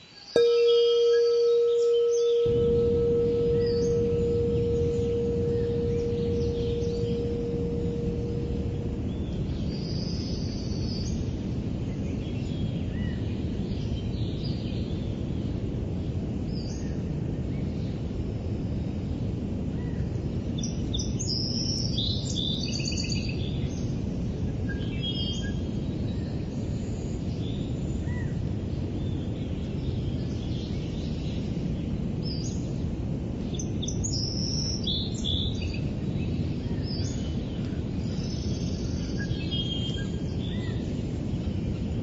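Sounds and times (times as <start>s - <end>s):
low even hiss: 0.2s - 19.2s.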